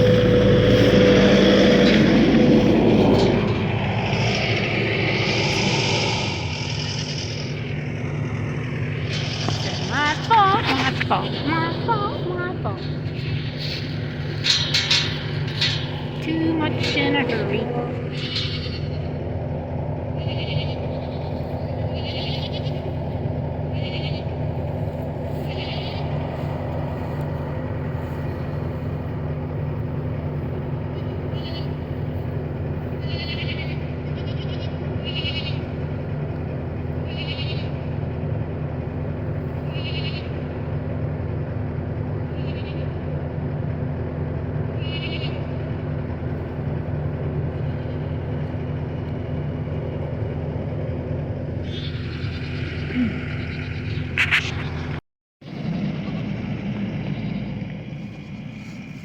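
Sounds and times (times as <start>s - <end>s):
low engine hum: 0.0s - 59.0s
goats bleating: 9.9s - 13.5s, 16.4s - 19.1s, 20.2s - 22.9s, 23.7s - 24.3s, 25.3s - 26.6s, 33.0s - 35.8s, 37.0s - 37.9s, 42.3s - 43.0s, 44.8s - 45.6s.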